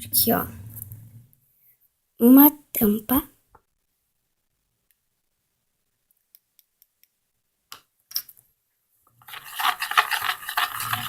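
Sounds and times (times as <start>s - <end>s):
spoon scraping inside a pot: 9.2s - 11.0s.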